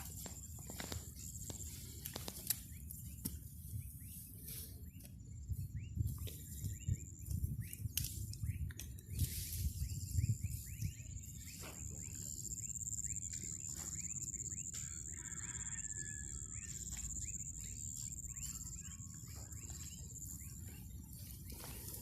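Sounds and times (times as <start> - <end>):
steady high-pitched whine: 0.0 - 3.0, 9.4 - 22.0
small birds chirping: 0.0 - 22.0.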